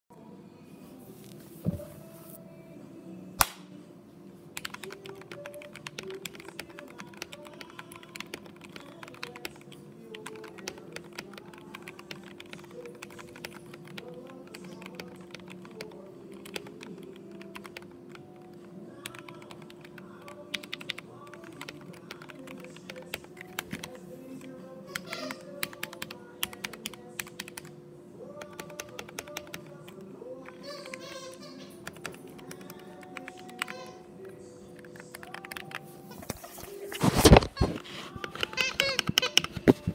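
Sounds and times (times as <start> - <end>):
quiet background music: 0.1 - 39.9
mechanical keyboard typing: 4.6 - 23.9, 24.9 - 27.7, 28.4 - 29.8, 31.8 - 33.9, 34.8 - 35.8, 38.1 - 39.9.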